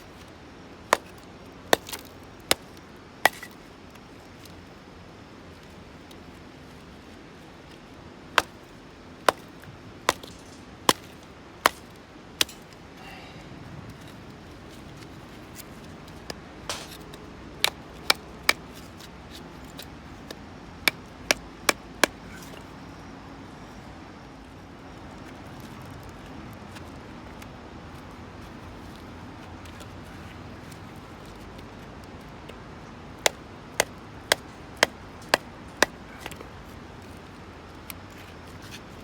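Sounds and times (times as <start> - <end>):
axe strikes into wood: 16.7 - 18.6.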